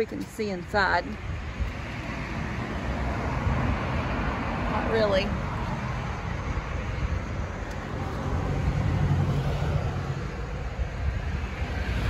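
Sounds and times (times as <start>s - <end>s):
road traffic noise: 0.0s - 12.0s
vehicle passing by: 7.8s - 12.0s.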